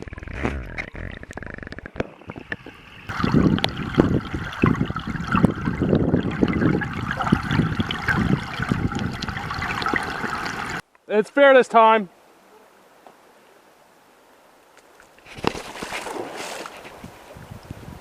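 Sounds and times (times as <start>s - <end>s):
river water running and splashing: 2.7s - 10.8s.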